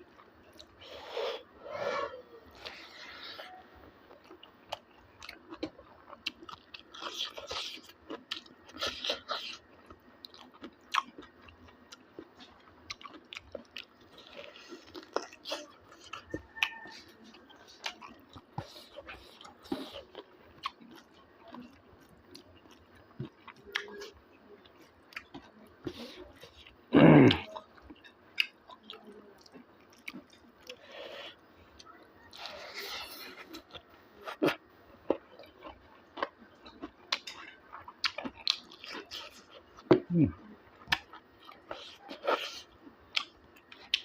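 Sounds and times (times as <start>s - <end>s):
person chewing food: 0.0s - 44.0s
loud throat sound: 26.9s - 27.5s.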